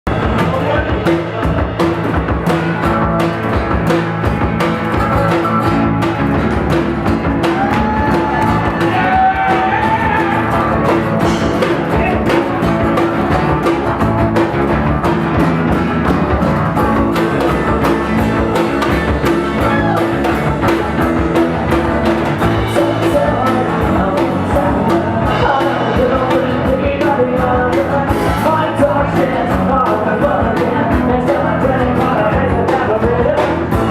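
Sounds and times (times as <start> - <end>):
guitar: 0.0 - 33.9
drum beat: 0.1 - 33.9
pop-punk band playing live: 0.1 - 33.9
person singing: 7.4 - 12.7, 18.9 - 20.8, 22.1 - 33.9.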